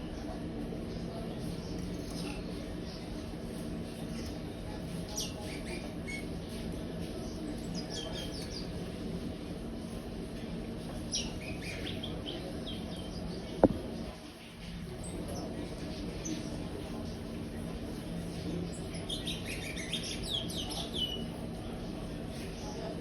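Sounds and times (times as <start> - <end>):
finch chirping song: 11.1 - 13.3, 18.7 - 21.2.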